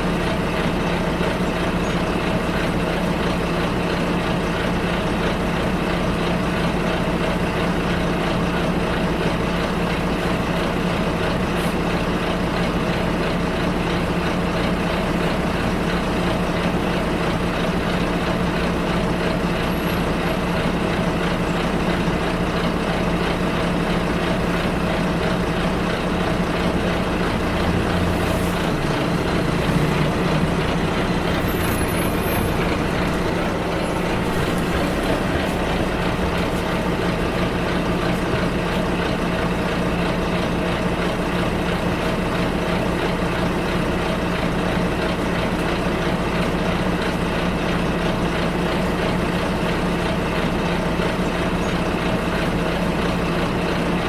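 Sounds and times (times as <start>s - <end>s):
bus engine running: 0.0s - 54.0s
road noise: 0.0s - 54.0s.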